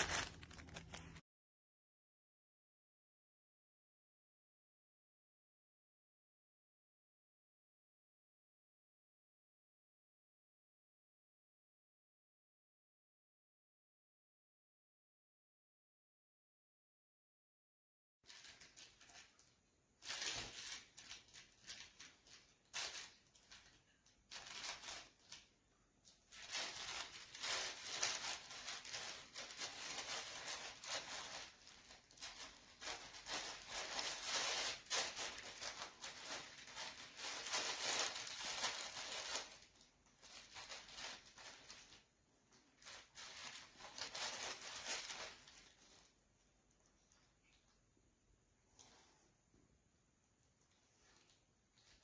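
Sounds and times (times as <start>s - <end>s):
dog rustling fabric toy: 0.0s - 1.2s, 20.0s - 25.5s, 26.3s - 46.2s.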